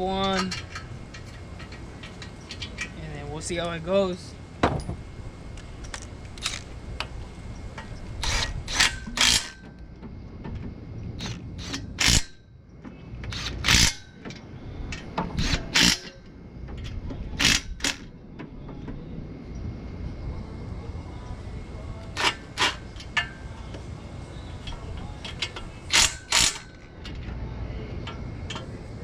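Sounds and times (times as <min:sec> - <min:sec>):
ratchet wrench clicking: 0:08.2 - 0:09.6, 0:11.2 - 0:12.4, 0:13.2 - 0:14.2, 0:14.9 - 0:16.2, 0:17.4 - 0:18.1, 0:22.0 - 0:23.4, 0:24.6 - 0:27.2.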